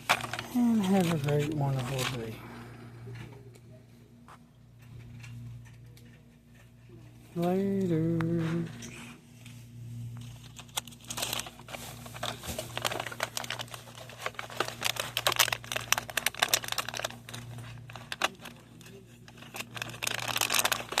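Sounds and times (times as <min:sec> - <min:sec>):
quick clicks and crackles: 0:00.0 - 0:02.3, 0:10.2 - 0:21.0
crinkling and rustling: 0:00.0 - 0:02.4, 0:04.3 - 0:21.0
steady low hum: 0:00.0 - 0:21.0.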